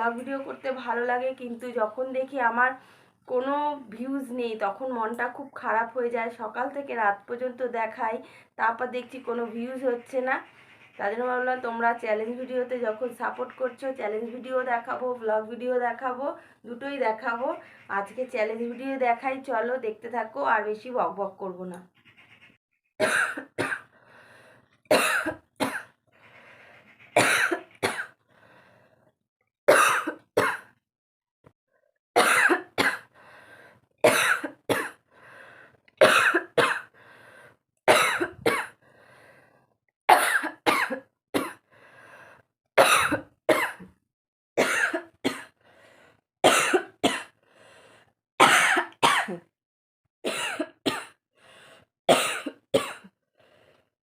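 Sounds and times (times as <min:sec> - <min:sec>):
woman coughing: 0:23.0 - 0:23.9, 0:24.9 - 0:25.9, 0:27.2 - 0:28.1, 0:29.7 - 0:30.7, 0:32.2 - 0:33.1, 0:34.0 - 0:35.0, 0:36.0 - 0:36.9, 0:37.9 - 0:38.8, 0:40.1 - 0:41.6, 0:42.8 - 0:43.9, 0:44.6 - 0:45.5, 0:46.4 - 0:47.3, 0:48.4 - 0:49.5, 0:50.3 - 0:51.2, 0:52.1 - 0:53.1.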